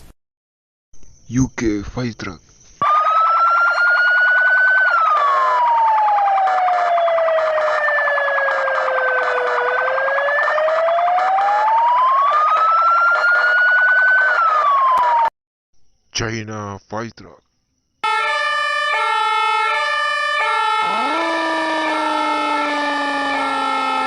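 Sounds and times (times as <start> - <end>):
fire engine siren wailing: 2.8 - 15.3, 18.0 - 24.0.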